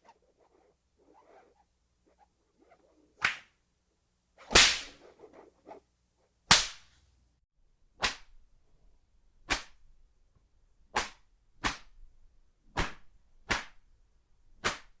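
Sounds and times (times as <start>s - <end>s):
whip cracking: 3.2s - 3.5s, 4.4s - 5.1s, 6.5s - 6.9s, 8.0s - 8.4s, 9.5s - 9.8s, 11.0s - 12.1s, 12.8s - 13.8s, 14.6s - 15.0s.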